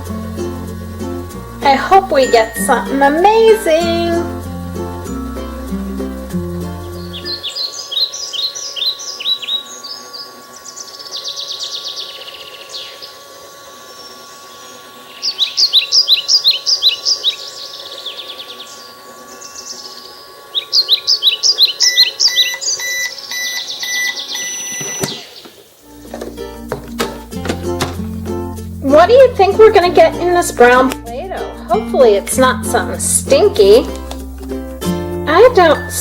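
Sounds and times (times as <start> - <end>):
toy microwave electronic tone: 0.0 - 5.2, 6.8 - 25.6, 35.4 - 36.0
bird chirping: 6.8 - 13.2, 13.8 - 25.7
regular beeps: 21.8 - 25.2.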